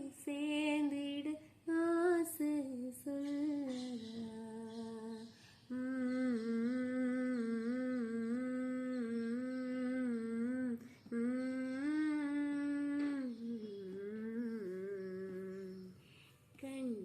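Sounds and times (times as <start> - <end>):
woman humming: 3.7 - 16.0
breath: 5.3 - 5.7, 16.0 - 16.5.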